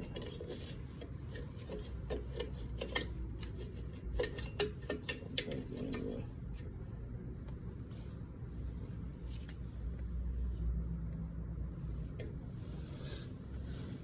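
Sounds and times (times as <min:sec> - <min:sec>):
metal brake parts clinking: 0:04.2 - 0:05.6.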